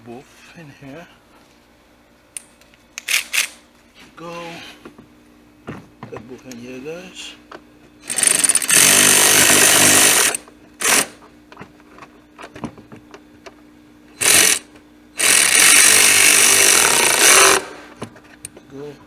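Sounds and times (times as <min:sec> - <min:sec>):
power driver running screws: 0:03.0 - 0:03.6, 0:08.0 - 0:11.2, 0:14.2 - 0:17.8.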